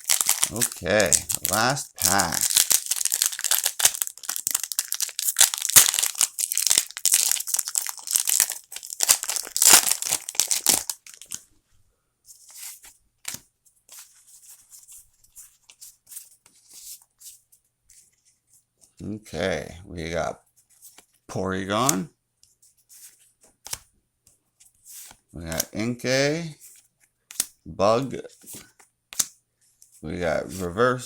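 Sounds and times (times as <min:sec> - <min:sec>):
cards rustling: 0:00.0 - 0:11.4, 0:28.2 - 0:30.9
foil wrapper tearing and crinkling: 0:00.0 - 0:11.4.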